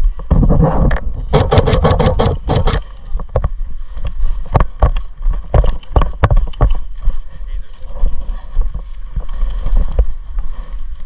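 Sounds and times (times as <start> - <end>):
microphone handling noise: 0.0 - 11.0
wind rumble on microphone: 0.0 - 11.0
airsoft gun shots: 1.3 - 2.8.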